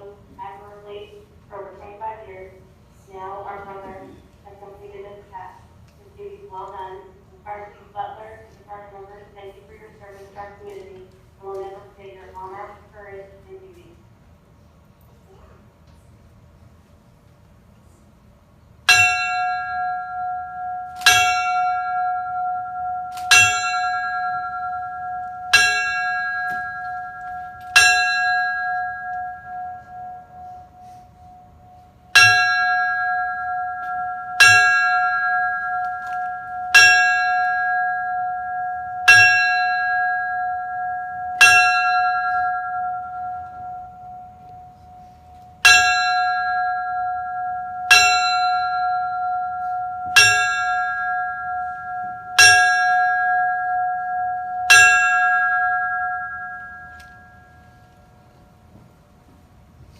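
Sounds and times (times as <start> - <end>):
fire bell strokes: 18.9 - 59.0.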